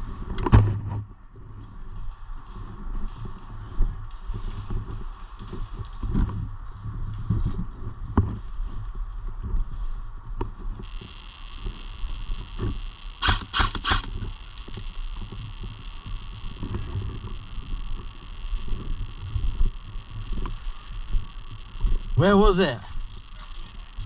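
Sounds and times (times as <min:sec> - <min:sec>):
low microphone rumble: 0:00.0 - 0:24.0
airsoft gun shots: 0:13.2 - 0:14.1.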